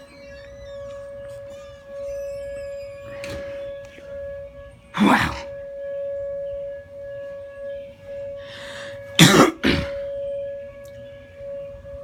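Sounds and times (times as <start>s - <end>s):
warning siren steady tone: 0.0s - 12.0s
person coughing loudly: 9.2s - 10.0s.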